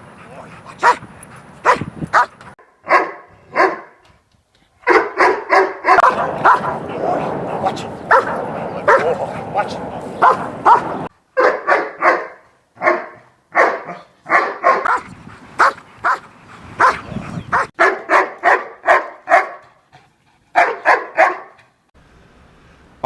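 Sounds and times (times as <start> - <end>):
dog barking: 0.8 - 1.0, 1.6 - 4.0, 4.8 - 16.2, 16.8 - 19.8, 20.6 - 21.6.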